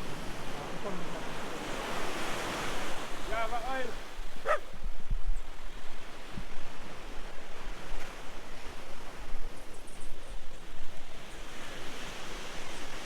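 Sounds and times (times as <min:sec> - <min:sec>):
surf washing on beach: 0:00.0 - 0:09.4
distant call: 0:03.2 - 0:04.7.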